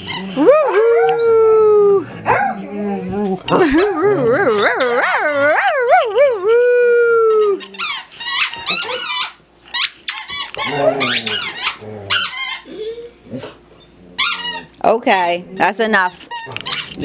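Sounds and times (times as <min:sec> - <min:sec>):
dog howling: 0:00.0 - 0:07.9, 0:10.6 - 0:14.7
dog whining and yelping: 0:00.0 - 0:14.7.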